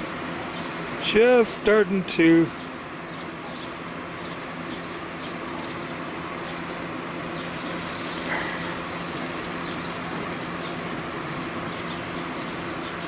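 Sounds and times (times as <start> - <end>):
sausages sizzling on a grill: 7.4 - 13.0.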